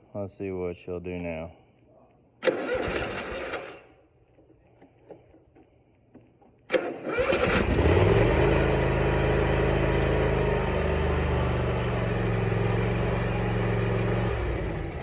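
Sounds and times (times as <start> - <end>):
mower engine running: 2.4 - 3.9, 6.7 - 15.0
mower engine cranking: 2.4 - 15.0.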